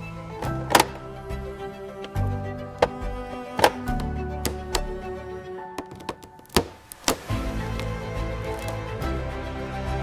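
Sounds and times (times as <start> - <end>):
sharp knocks: 3.6 - 4.9, 5.8 - 7.9.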